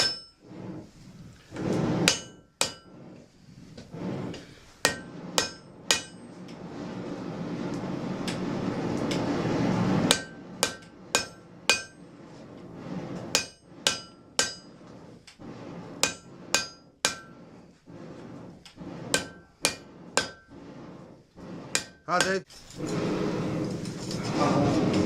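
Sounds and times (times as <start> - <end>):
hammer striking iron on anvil: 0.0 - 0.4, 2.1 - 2.8, 4.8 - 6.2, 10.1 - 12.0, 13.4 - 14.7, 16.0 - 17.3, 19.2 - 20.4
rushing noise: 5.1 - 11.6.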